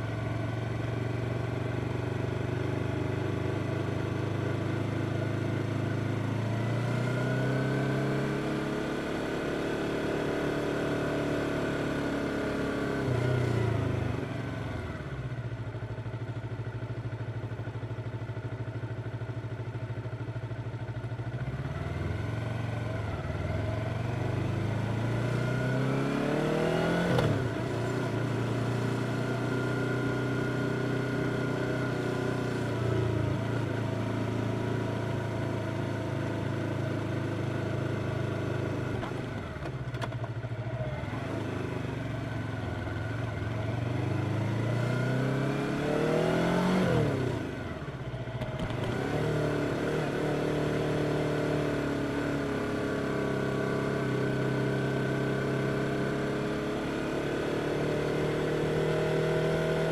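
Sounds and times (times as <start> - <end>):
motorcycle engine revving: 21.3 - 59.9.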